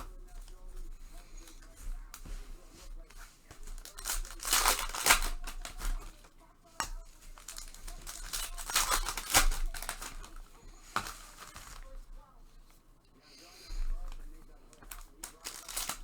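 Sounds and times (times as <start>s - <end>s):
card pack wrappers tearing: 0.0s - 12.2s, 13.6s - 16.0s.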